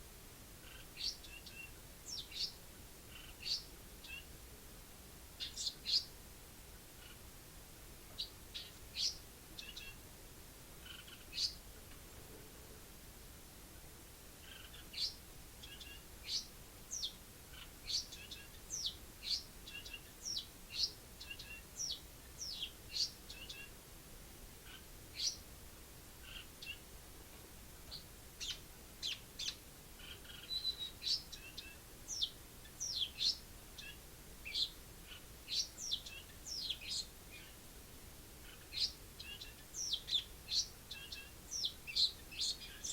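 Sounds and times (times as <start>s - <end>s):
sparrow chirping: 0.7s - 4.3s, 5.4s - 6.1s, 8.1s - 10.0s, 10.8s - 11.6s, 14.4s - 23.7s, 24.7s - 25.4s, 26.2s - 26.8s, 27.9s - 37.6s, 38.4s - 42.9s.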